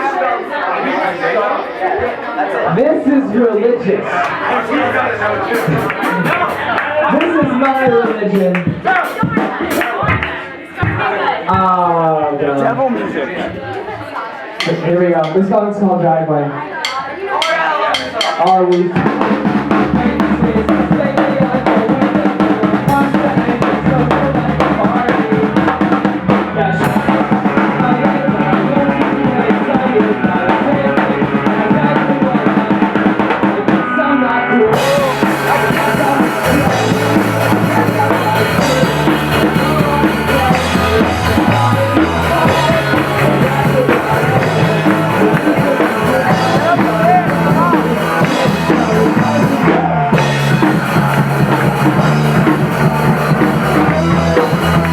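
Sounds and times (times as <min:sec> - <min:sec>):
live rock band playing: 0:16.8 - 0:54.9
bass line: 0:18.6 - 0:54.9
drum kit kick and snare: 0:34.7 - 0:54.9.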